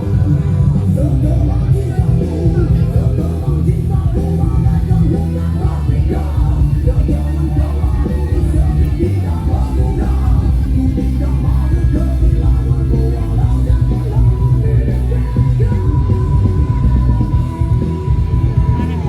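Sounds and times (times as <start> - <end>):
loud music with heavy bass: 0.0 - 19.0
person singing: 0.0 - 19.0.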